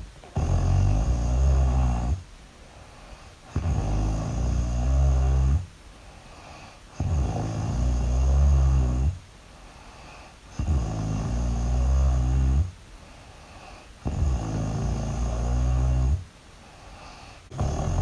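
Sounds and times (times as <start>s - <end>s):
quiet breaths: 0.0s - 18.0s
person snoring loudly: 0.2s - 2.2s, 3.5s - 5.7s, 6.9s - 9.2s, 10.5s - 12.7s, 13.6s - 16.2s, 17.0s - 18.0s.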